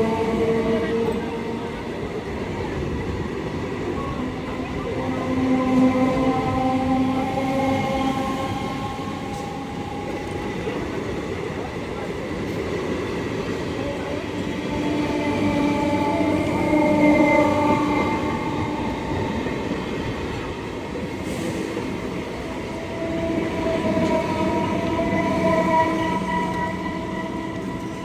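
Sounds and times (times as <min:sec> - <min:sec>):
train rumbling past: 0:00.0 - 0:28.0
train horn long tones: 0:03.9 - 0:11.1, 0:14.1 - 0:20.4, 0:21.3 - 0:28.0.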